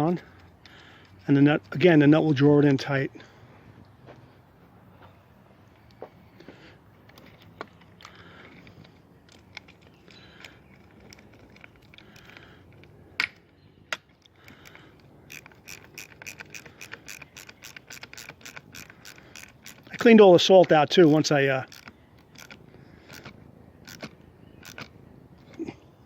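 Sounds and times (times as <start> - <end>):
ratchet wrench clicking: 14.4 - 24.9.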